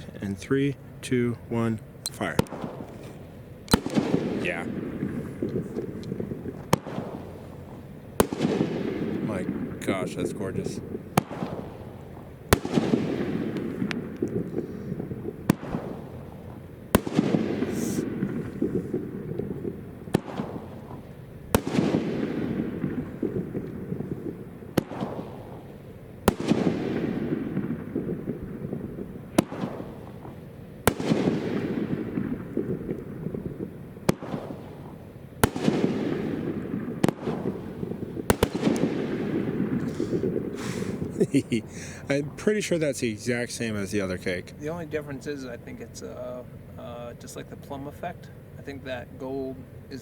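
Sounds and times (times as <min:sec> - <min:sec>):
firework shell bang: 0:02.4 - 0:21.0
firework launch thump: 0:17.0 - 0:19.0.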